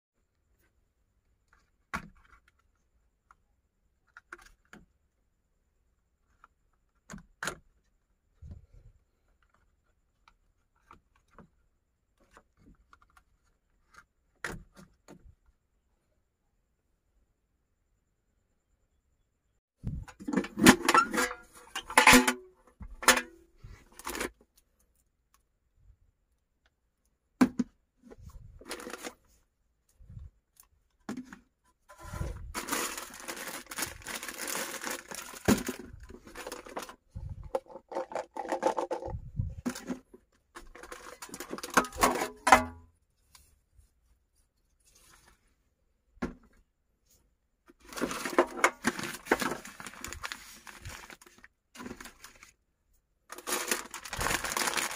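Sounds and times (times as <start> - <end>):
plastic crinkling and rustling: 28.6 - 29.3, 32.0 - 42.3, 47.8 - 52.6, 53.3 - 54.9.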